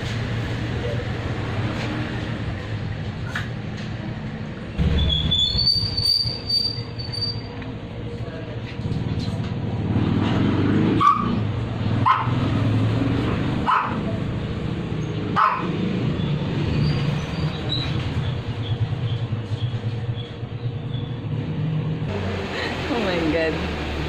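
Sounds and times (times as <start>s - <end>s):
dog barking: 11.0s - 11.4s, 12.0s - 12.4s, 13.6s - 14.2s, 15.3s - 15.8s.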